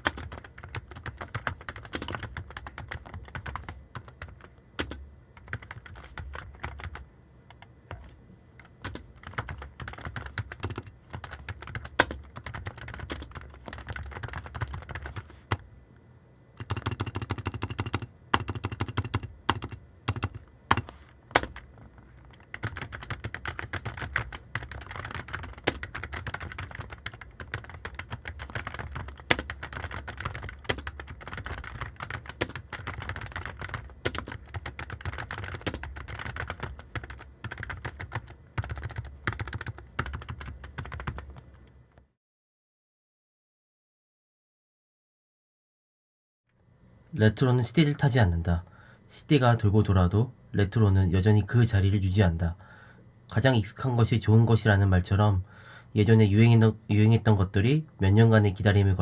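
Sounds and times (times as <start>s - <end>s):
computer keyboard typing: 0.0s - 15.6s, 16.6s - 41.6s.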